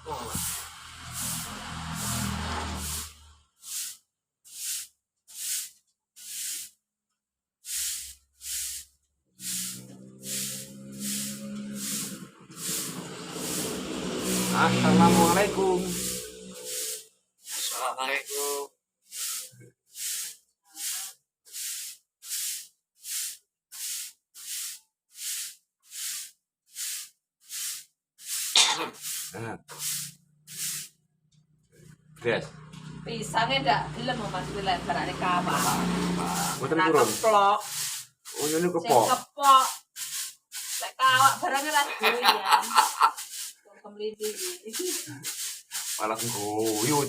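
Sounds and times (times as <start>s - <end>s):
bird giving breathy hisses: 3.6s - 6.7s, 7.6s - 13.6s, 19.1s - 30.9s, 37.6s - 38.2s, 43.2s - 43.6s.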